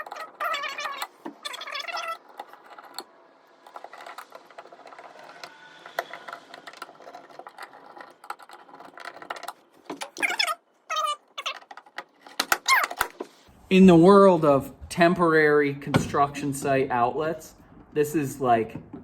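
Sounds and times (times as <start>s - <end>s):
small metal clicks and rattles: 0.0s - 13.2s.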